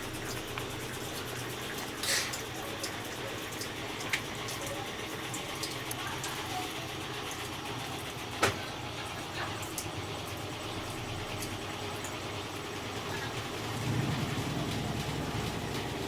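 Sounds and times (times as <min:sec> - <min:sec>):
washing machine spin hum: 0:00.0 - 0:16.0
water draining: 0:00.0 - 0:16.0.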